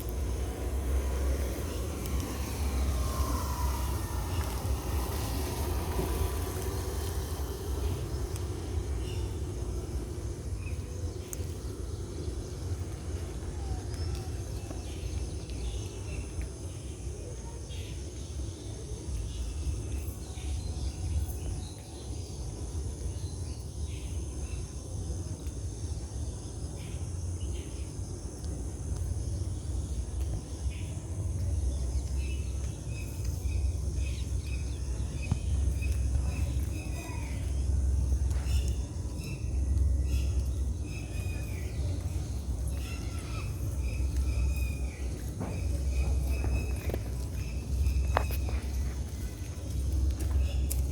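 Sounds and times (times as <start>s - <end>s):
low rumble: 0.0s - 16.4s, 28.5s - 50.9s
faint clicks: 11.2s - 11.6s.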